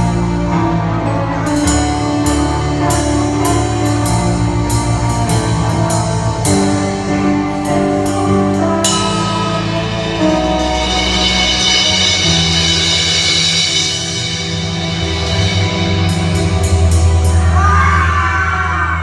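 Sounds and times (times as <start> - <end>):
instrumental rock music: 0.0 - 18.3
cymbal strikes: 8.0 - 17.5.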